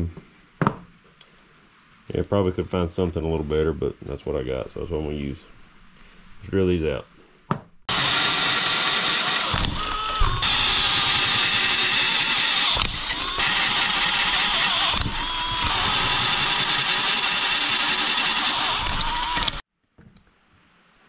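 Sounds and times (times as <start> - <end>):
electric drill boring: 7.9 - 19.6.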